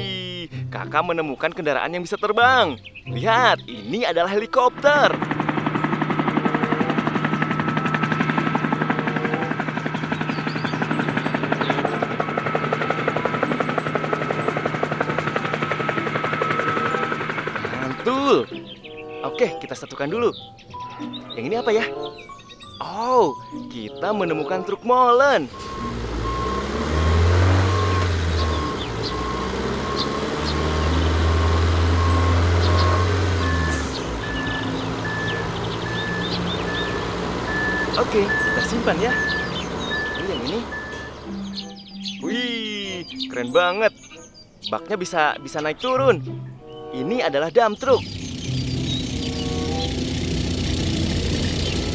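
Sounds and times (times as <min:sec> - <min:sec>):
helicopter rotor chopping: 0:04.6 - 0:18.7, 0:25.4 - 0:41.6, 0:47.8 - 0:51.9
short electronic beeps: 0:25.5 - 0:41.4
deep held bass notes: 0:25.5 - 0:41.5, 0:47.8 - 0:51.9.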